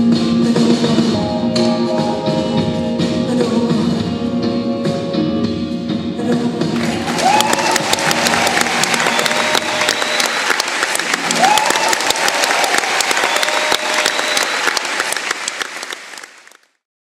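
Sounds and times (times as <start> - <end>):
audience applauding: 6.8 - 16.8.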